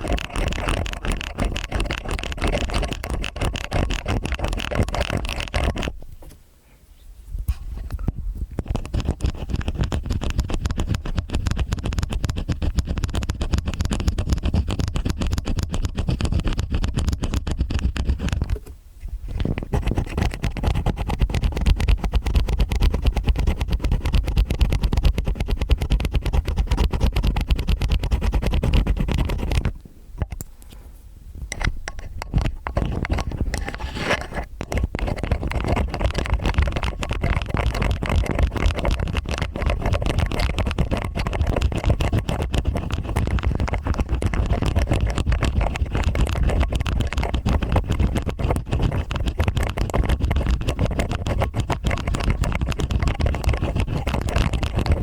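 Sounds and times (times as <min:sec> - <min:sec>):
metal ear picks scraping: 0:31.5 - 0:49.1.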